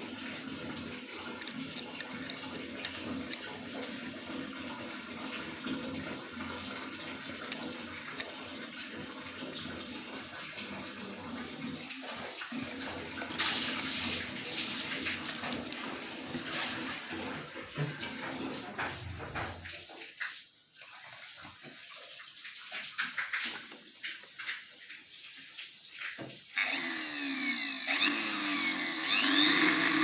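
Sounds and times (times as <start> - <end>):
grinder motor hissing: 26.6 - 30.0.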